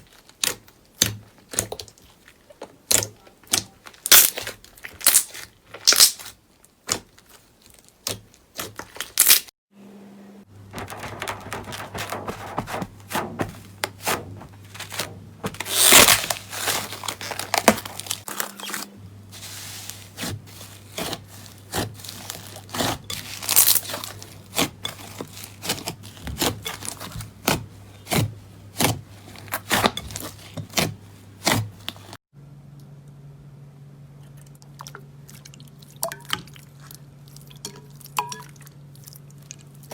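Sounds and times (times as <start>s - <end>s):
slime squeezed by hand crackling: 4.0s - 6.4s.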